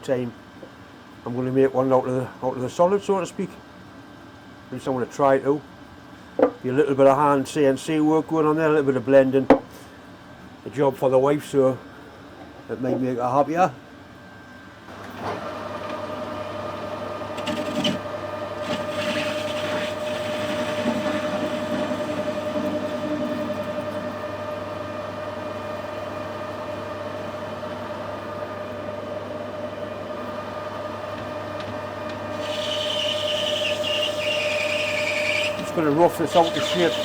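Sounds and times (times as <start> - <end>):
machine tool whine and hum: 11.9 - 37.0
cutter screeching on metal: 18.6 - 24.0, 32.3 - 37.0.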